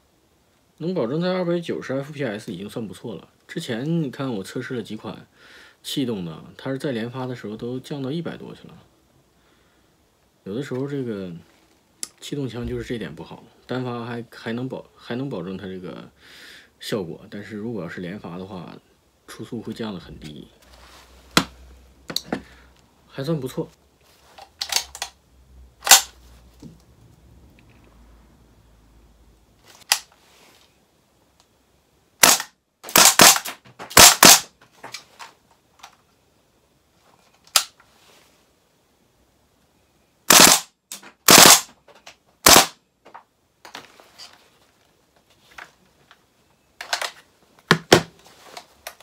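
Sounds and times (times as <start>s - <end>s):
airsoft rifle sharp clacks: 25.8s - 26.1s, 32.2s - 34.5s, 40.3s - 41.7s.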